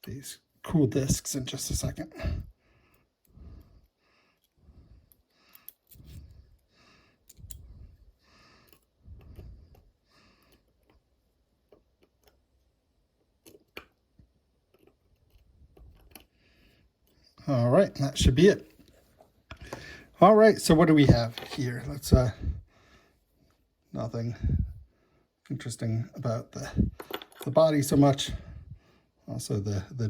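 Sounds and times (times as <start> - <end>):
small metal parts clicking: 4.4 - 6.0.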